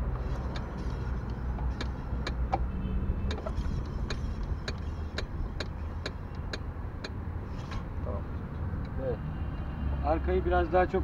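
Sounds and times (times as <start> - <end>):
scooter wheel ticking: 0.1 - 7.2.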